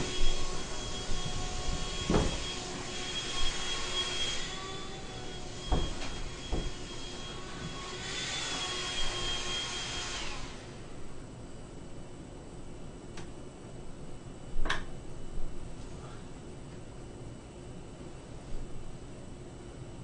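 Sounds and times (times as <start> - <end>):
sharp knocks: 5.7 - 6.8.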